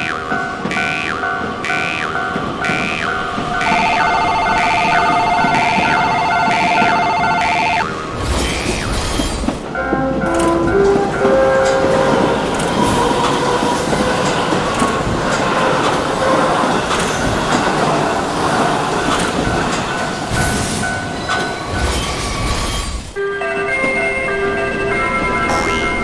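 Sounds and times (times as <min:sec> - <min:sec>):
wheels clacking over rail joints: 0:00.0 - 0:07.2, 0:07.8 - 0:26.0
train passing rumble: 0:00.0 - 0:26.0
pitched music tones: 0:23.6 - 0:26.0.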